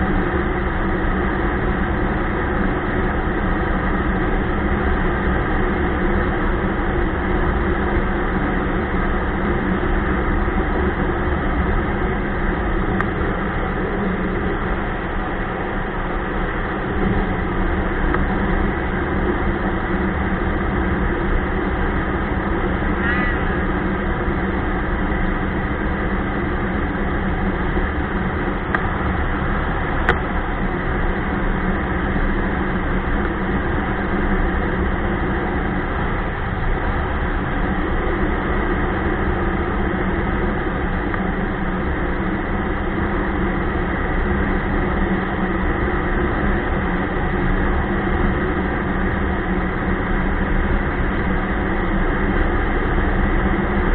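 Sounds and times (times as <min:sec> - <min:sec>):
snowmobile engine drone: 0:00.0 - 0:53.9
wavering squeak: 0:23.0 - 0:23.6.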